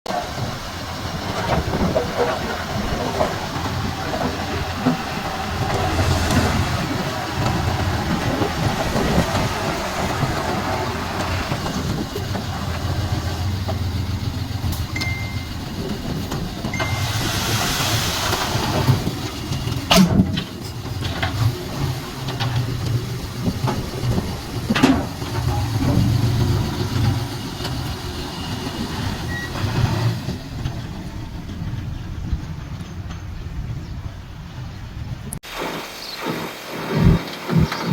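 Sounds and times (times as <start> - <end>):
bulldozer diesel engine running: 0.1 - 35.4
tracks clanking: 0.1 - 35.4
short high beeps: 15.0 - 15.7, 16.8 - 17.2.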